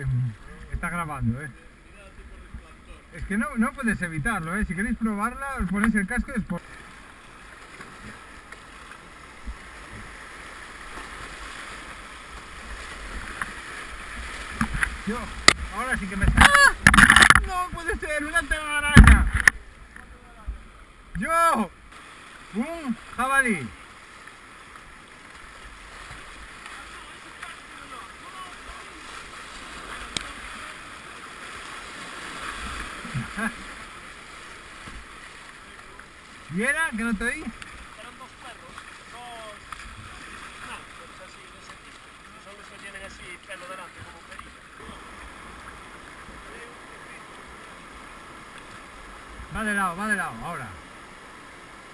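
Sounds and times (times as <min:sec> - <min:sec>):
river water rushing: 0:00.0 - 0:51.9
voice-like call: 0:16.4 - 0:16.9.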